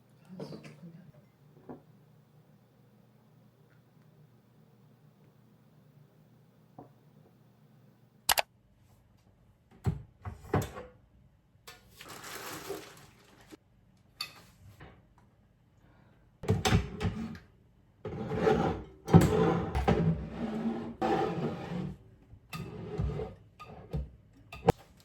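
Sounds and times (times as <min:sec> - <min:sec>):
sharp click: 0:08.3 - 0:08.5
clatter of things being moved: 0:11.9 - 0:13.6
rustling: 0:11.9 - 0:13.6.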